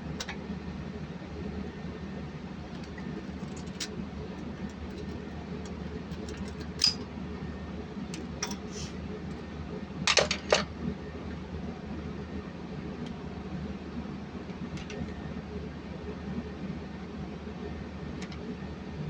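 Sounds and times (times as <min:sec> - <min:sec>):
steady low hum: 0:00.0 - 0:10.1, 0:10.7 - 0:19.0
metal tools clinking: 0:06.2 - 0:07.0.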